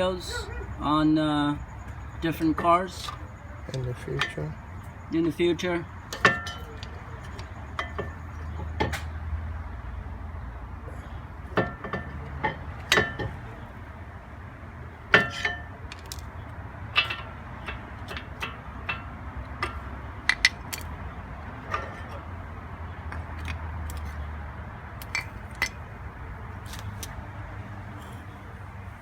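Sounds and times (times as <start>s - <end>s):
metallic clicks and clinks: 25.0s - 25.8s.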